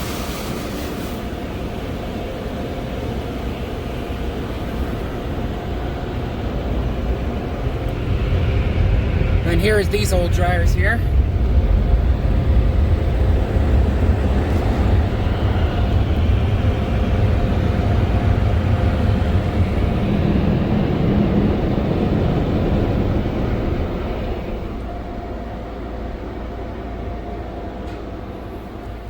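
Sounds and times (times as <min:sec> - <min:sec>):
car wash dryers blowing air: 0:00.0 - 0:29.0.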